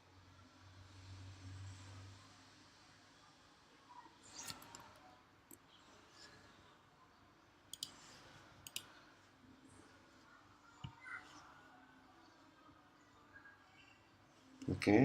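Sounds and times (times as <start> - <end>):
computer mouse clicks: 4.3 - 5.6, 7.7 - 9.0.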